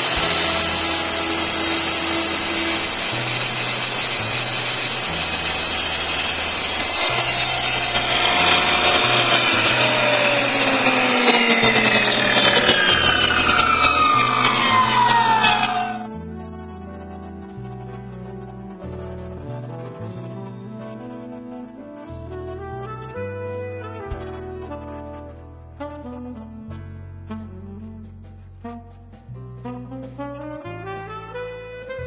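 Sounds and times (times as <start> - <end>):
electric tile saw whining: 0.0 - 16.1
background music with bass: 0.0 - 32.0.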